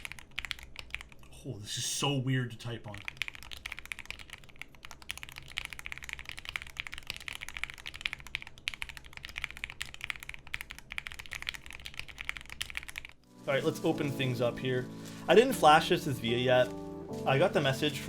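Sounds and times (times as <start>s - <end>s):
mechanical keyboard typing: 0.0s - 1.2s, 3.0s - 13.2s.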